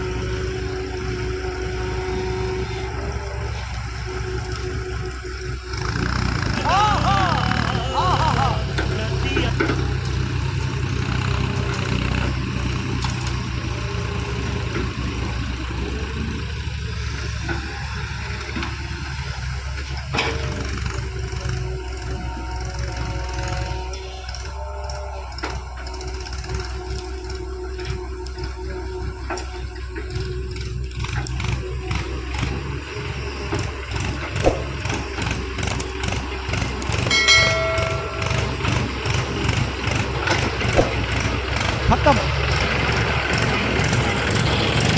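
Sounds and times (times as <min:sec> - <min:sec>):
heavy diesel engine running: 0:00.0 - 0:44.9
pitched tone: 0:37.0 - 0:40.2.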